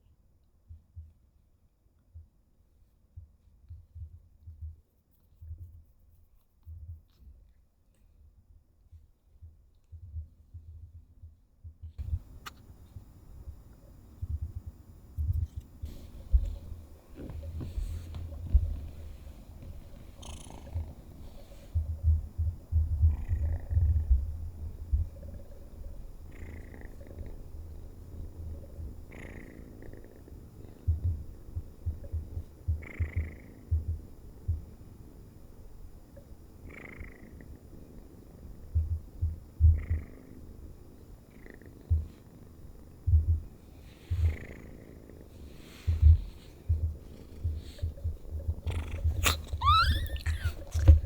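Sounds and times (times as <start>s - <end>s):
kitten purring: 9.0s - 34.8s, 36.6s - 40.6s, 41.2s - 51.0s.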